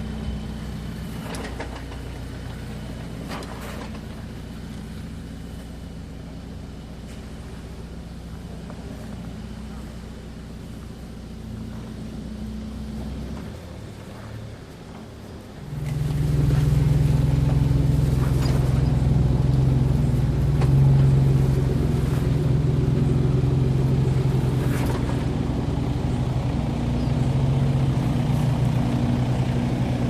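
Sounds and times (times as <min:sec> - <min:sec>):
vehicle engine running at low revs: 0:00.0 - 0:30.0.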